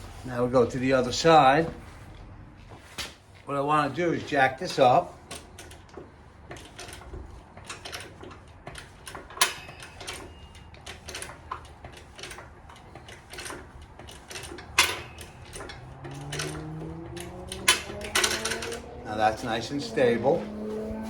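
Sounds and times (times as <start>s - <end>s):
metal clanks: 4.8s - 21.0s
lift jack metallic clicks: 5.2s - 19.6s
low hum rising in pitch: 16.0s - 21.0s.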